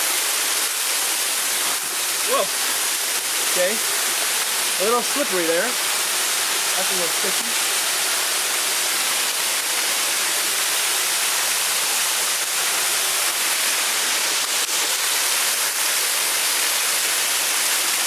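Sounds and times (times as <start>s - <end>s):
waterfall rushing and splashing: 0.0s - 18.0s.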